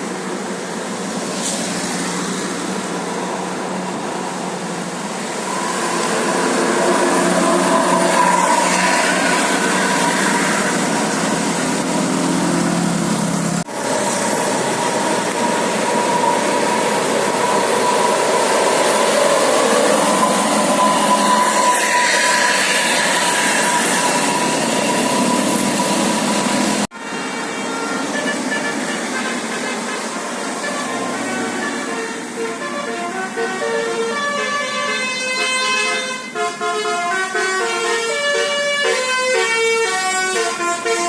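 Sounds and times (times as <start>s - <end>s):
bus engine and road noise: 0.0s - 41.0s
steady high tone: 4.8s - 12.8s, 13.7s - 26.9s.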